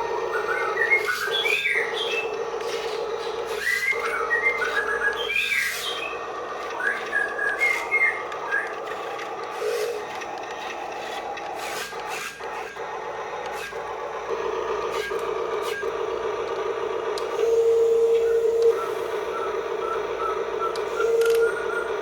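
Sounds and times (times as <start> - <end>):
electric motors whining: 0.0 - 22.0
scattered clicks: 0.8 - 12.8, 14.9 - 17.5, 20.0 - 21.6.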